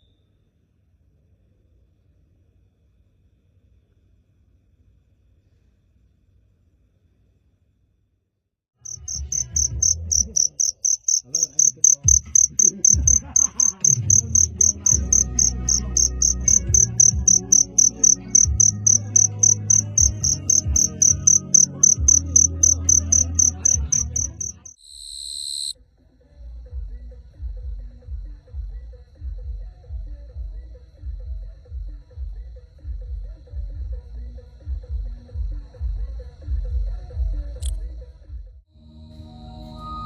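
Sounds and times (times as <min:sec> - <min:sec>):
cricket chirping: 0:08.9 - 0:25.8.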